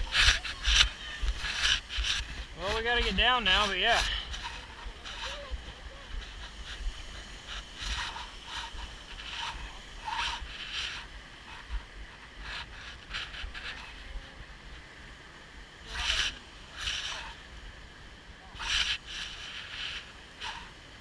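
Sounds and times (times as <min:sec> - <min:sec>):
footsteps on wet path: 0:00.0 - 0:14.1
microphone hiss and rumble: 0:00.0 - 0:21.0.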